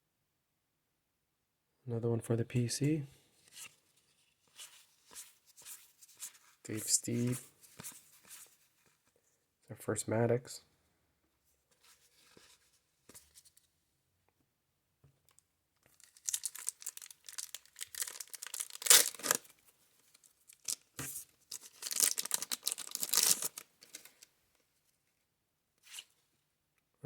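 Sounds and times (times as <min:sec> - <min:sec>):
wrapper tearing and crinkling: 0:15.9 - 0:19.5, 0:21.5 - 0:24.2.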